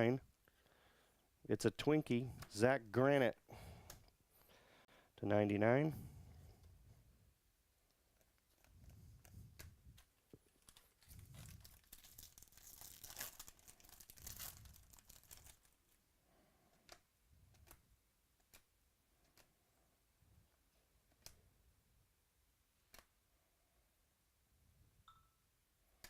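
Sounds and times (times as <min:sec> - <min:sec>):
wrapper tearing and crinkling: 0:10.5 - 0:15.9
cards clicking: 0:22.9 - 0:23.1.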